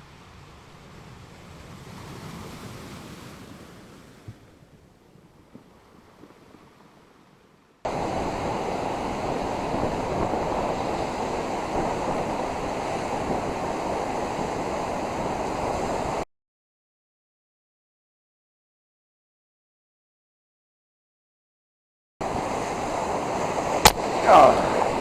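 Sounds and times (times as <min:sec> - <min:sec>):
ocean surf: 0:00.0 - 0:16.2, 0:22.2 - 0:25.0
wind noise on microphone: 0:07.8 - 0:16.2.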